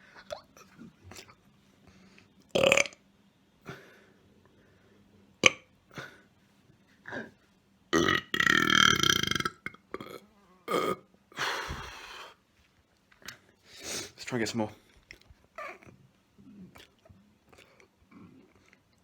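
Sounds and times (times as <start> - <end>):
person burping: 2.6 - 3.0, 5.4 - 6.2, 8.0 - 11.1.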